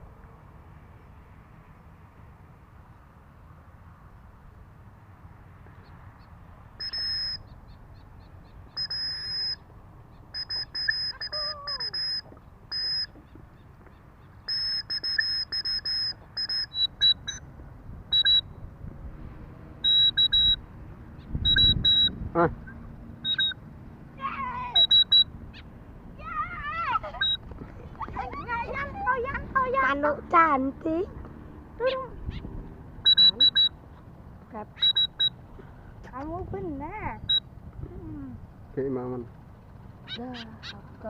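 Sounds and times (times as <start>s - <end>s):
bird harsh nasal calls: 6.2s - 17.4s, 34.7s - 35.9s.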